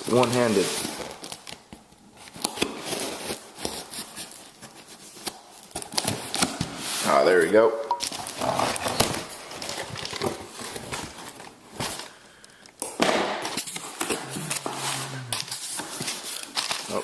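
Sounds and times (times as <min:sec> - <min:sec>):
paper rustling: 0:13.5 - 0:17.0.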